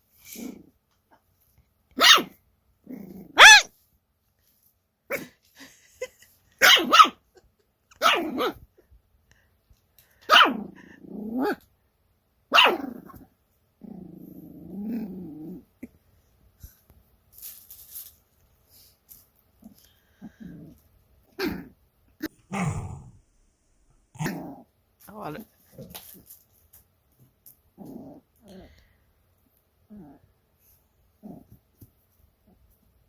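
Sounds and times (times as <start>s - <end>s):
puppy yapping: 2.0s - 2.4s, 3.3s - 3.7s, 6.6s - 7.2s, 8.0s - 8.6s, 10.3s - 10.6s, 12.5s - 12.9s
puppy growling: 2.8s - 3.6s, 10.4s - 11.7s, 12.7s - 16.0s, 19.6s - 24.7s, 27.8s - 28.8s, 29.9s - 30.4s, 31.2s - 31.6s.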